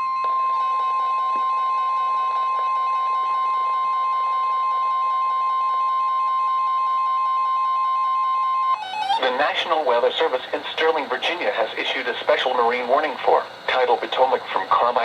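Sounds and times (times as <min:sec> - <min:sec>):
steady high warning tone: 0:00.0 - 0:15.0.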